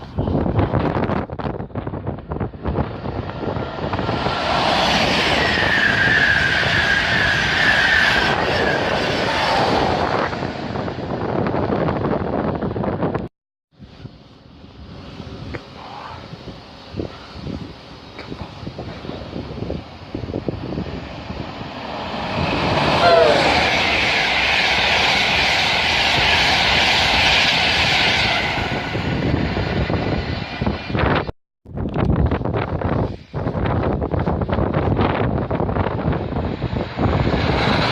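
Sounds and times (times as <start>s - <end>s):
train passing at speed: 0.0s - 13.2s, 13.8s - 31.3s, 32.8s - 37.9s
high whine falling in pitch: 19.5s - 31.3s.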